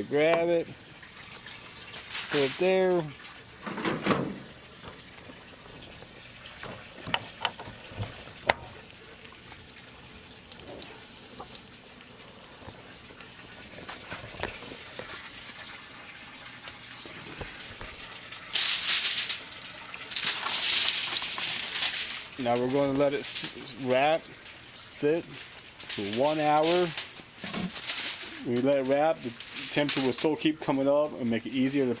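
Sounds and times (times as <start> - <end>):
aluminium foil crinkling: 1.1 - 3.4, 17.0 - 30.6.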